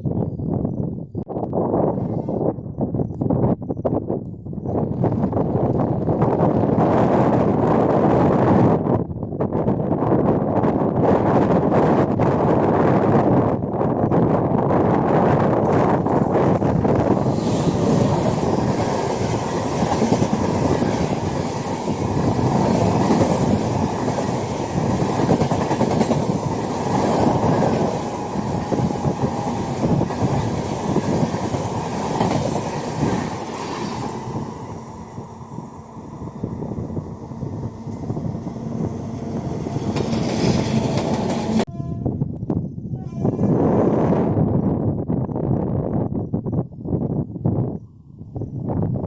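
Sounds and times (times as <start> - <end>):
train wheels clattering over rails: 15.7 - 34.4, 37.9 - 41.7.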